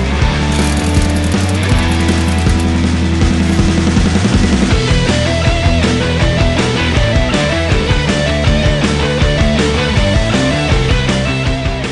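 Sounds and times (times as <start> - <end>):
rock music: 0.0 - 11.9.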